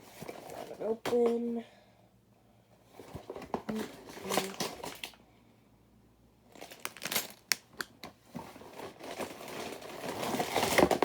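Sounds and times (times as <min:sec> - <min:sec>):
rustling plastic bags: 0:06.5 - 0:07.7, 0:08.4 - 0:11.0.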